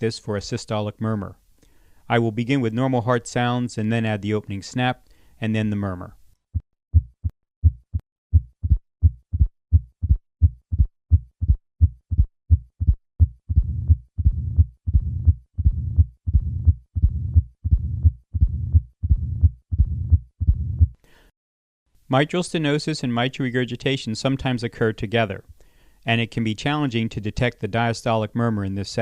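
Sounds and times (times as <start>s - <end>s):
heartbeat: 6.5s - 21.0s
low-pitched heart murmur rumble: 7.0s - 21.0s.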